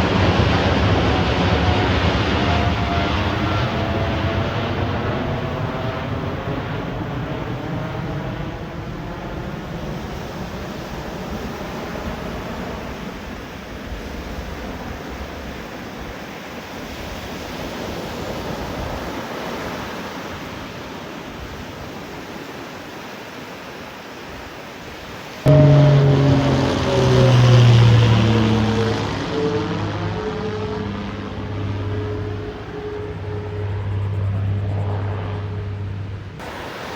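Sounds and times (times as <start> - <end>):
jet engine roar: 0.0 - 16.8, 25.4 - 36.9.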